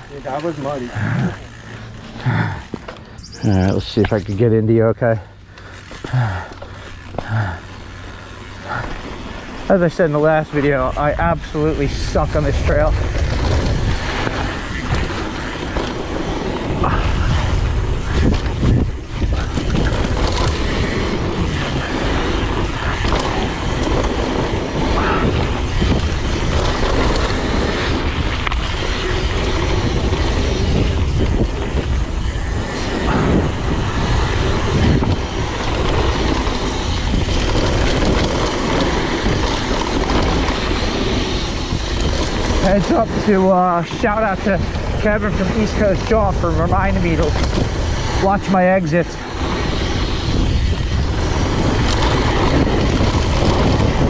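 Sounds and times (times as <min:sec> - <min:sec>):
wind buffeting microphone: 0:00.0 - 0:54.0
bike knocks and rattles: 0:11.4 - 0:44.0.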